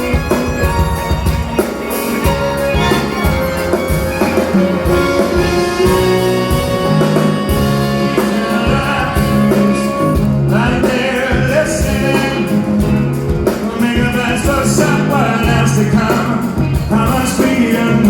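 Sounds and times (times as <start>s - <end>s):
gliding lead melody: 0.0s - 13.3s
keyboard chords: 0.0s - 13.7s
drum beat: 0.0s - 17.9s
bass: 0.0s - 18.0s.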